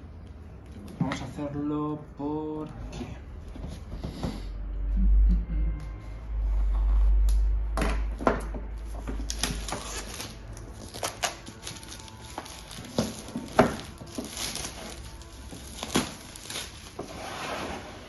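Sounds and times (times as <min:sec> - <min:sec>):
low rumble: 0:02.7 - 0:09.7.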